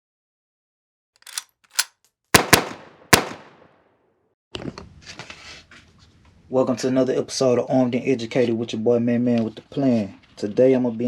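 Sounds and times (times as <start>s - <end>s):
light clicks: 1.2s - 1.9s
gunshots ringing out: 1.2s - 3.8s.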